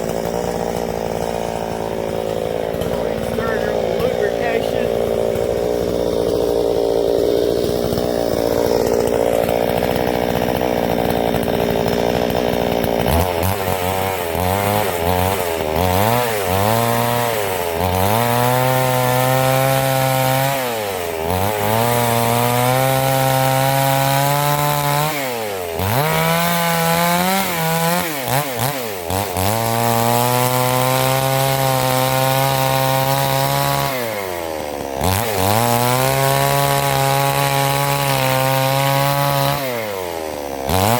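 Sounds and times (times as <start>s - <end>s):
chainsaw cutting log: 0.0s - 40.9s.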